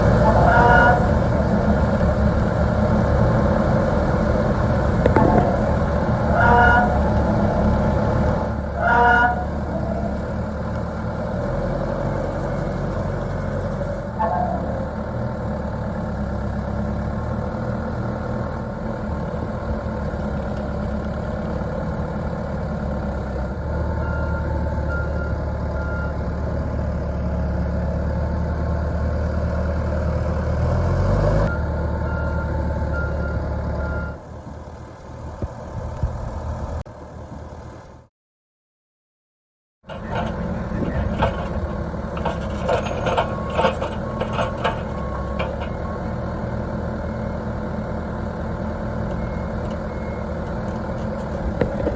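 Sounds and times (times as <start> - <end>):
horn toots: 0.0 - 1.6, 5.0 - 7.7, 8.7 - 10.2
diesel engine running: 0.0 - 38.1, 39.9 - 51.9.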